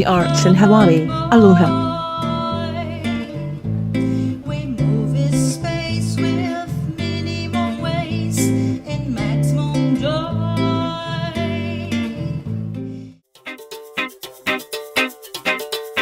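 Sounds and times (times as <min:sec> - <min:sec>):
person singing: 0:00.0 - 0:03.5, 0:04.2 - 0:12.5
low bass line: 0:00.0 - 0:13.1
acoustic guitar chords: 0:00.0 - 0:16.0.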